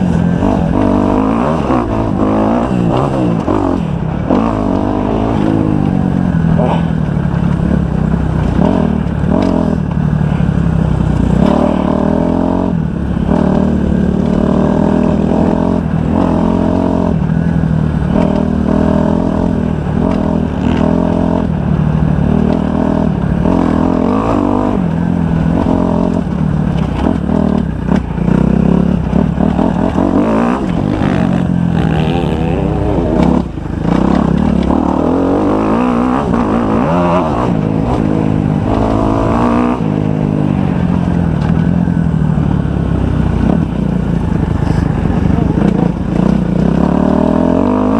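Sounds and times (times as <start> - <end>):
motocross bike engine revving: 0.0 - 41.9, 42.6 - 47.9.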